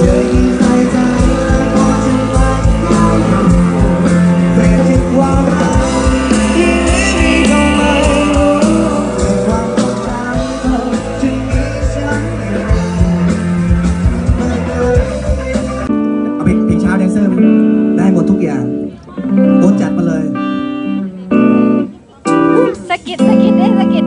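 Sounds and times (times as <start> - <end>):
drum beat: 0.0 - 15.9
person singing: 0.0 - 15.9
bass guitar: 0.0 - 24.0
electric guitar: 0.0 - 24.0.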